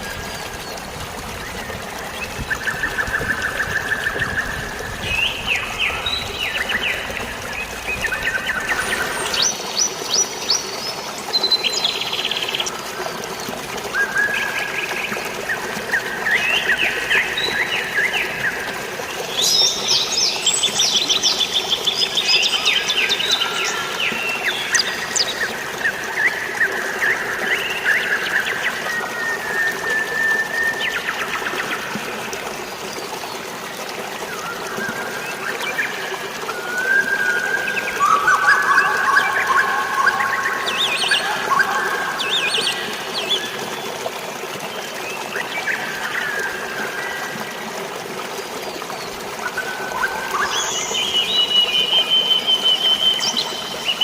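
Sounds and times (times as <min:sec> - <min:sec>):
flowing water rushing: 0:00.0 - 0:54.0.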